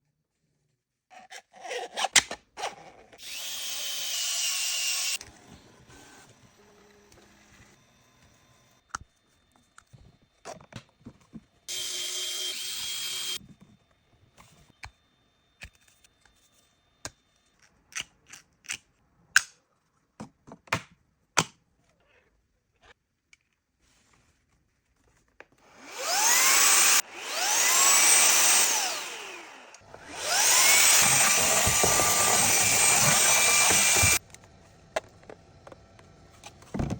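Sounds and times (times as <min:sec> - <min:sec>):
small vacuum cleaner whining: 0:03.1 - 0:16.9, 0:25.6 - 0:36.9
cordless screwdriver whirring: 0:03.2 - 0:05.2, 0:11.7 - 0:13.4, 0:25.7 - 0:34.2
plastic parts clicking and knocking: 0:30.8 - 0:36.9.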